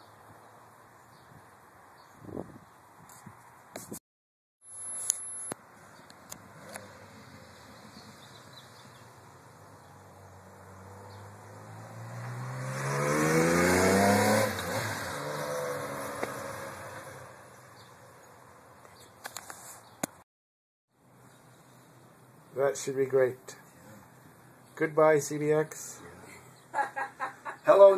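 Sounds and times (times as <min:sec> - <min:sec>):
motorcycle engine accelerating: 0:10.5 - 0:17.4.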